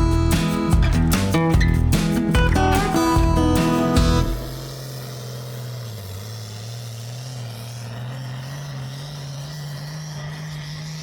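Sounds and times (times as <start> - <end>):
engine humming: 0.0 - 11.0.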